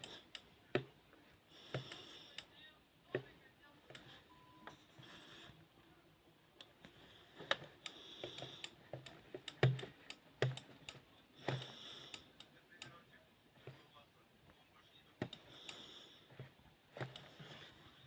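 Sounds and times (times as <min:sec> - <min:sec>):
remote control buttons clicking: 0:07.4 - 0:13.0.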